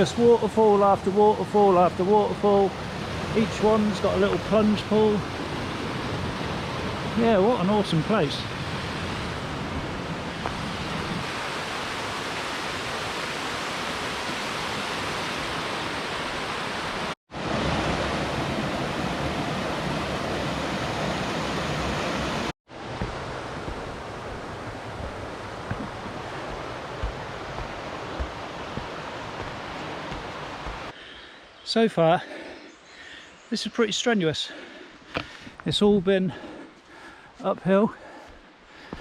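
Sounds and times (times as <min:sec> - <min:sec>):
river rushing over small waterfalls: 0:10.3 - 0:31.0.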